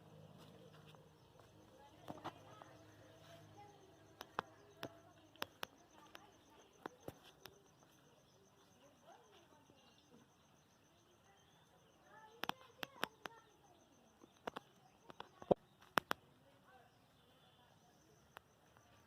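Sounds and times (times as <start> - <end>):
sharp clicks: 4.0 - 7.6, 12.3 - 13.5, 14.2 - 16.2.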